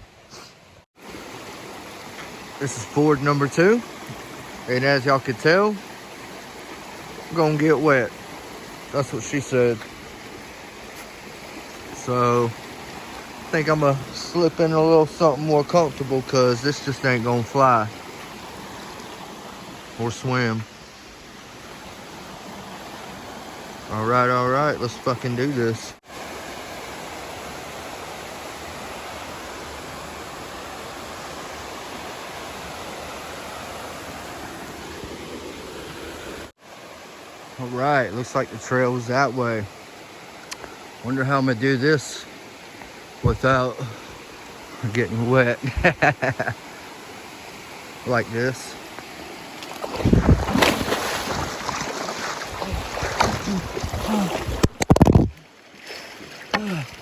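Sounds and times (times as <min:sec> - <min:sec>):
water splashing and sloshing: 0:01.0 - 0:41.2, 0:45.7 - 0:57.0
river water rushing over rocks: 0:46.5 - 0:57.0
person grunting: 0:53.4 - 0:54.5, 0:56.6 - 0:57.0.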